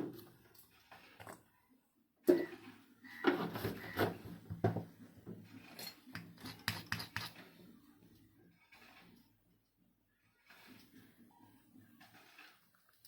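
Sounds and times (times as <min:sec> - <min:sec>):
scraping and rubbing: 0:05.0 - 0:09.5, 0:10.2 - 0:13.0.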